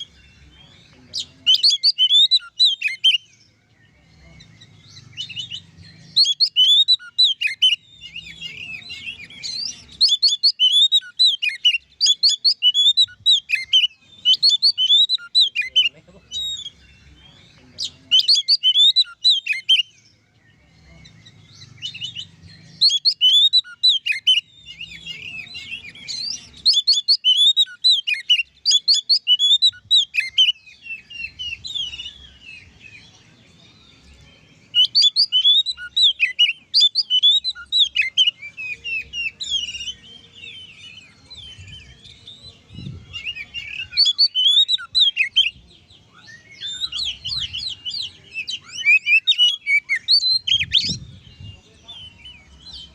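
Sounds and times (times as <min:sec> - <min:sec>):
magpie-robin singing: 0:00.0 - 0:52.9.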